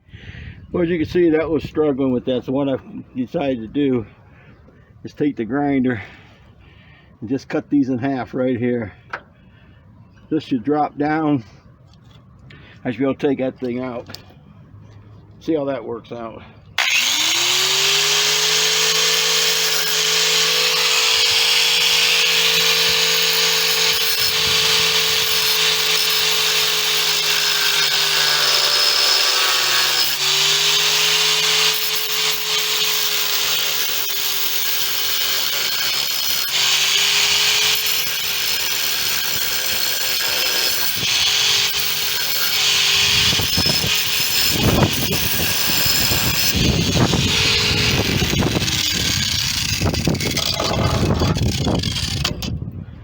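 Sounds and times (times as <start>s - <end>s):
angle grinder cutting steel: 16.8s - 52.5s.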